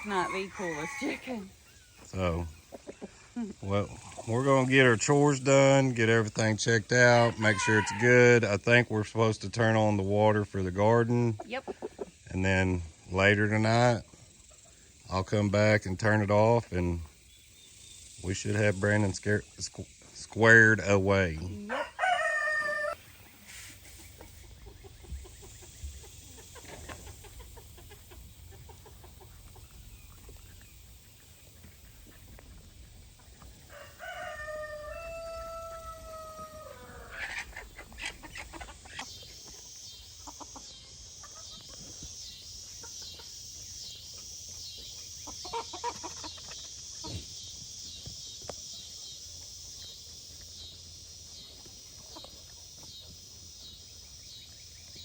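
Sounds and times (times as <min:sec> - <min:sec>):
rooster crowing: 0:00.0 - 0:01.5, 0:07.2 - 0:08.4, 0:21.6 - 0:23.0, 0:33.6 - 0:37.5.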